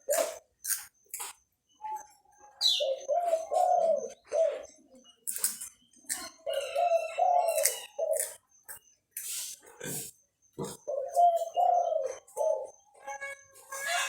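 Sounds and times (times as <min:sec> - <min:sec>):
dove cooing: 0:02.6 - 0:04.8, 0:06.3 - 0:08.4, 0:10.6 - 0:13.0
crackers crunching: 0:05.3 - 0:06.2.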